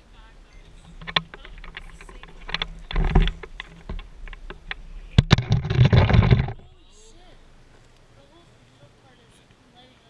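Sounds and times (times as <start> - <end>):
electrical arcing snaps and crackle: 0.0 - 6.8.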